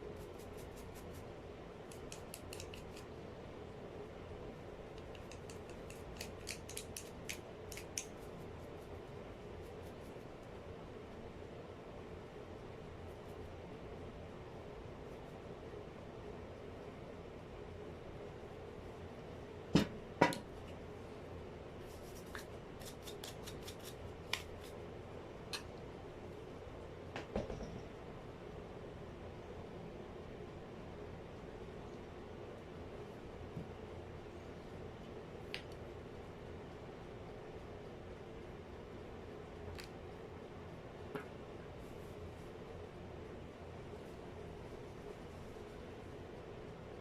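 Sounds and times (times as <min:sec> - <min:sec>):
faint steady hum: 0:00.0 - 0:47.0
small metallic clicks and snips: 0:01.9 - 0:03.1, 0:05.0 - 0:08.2.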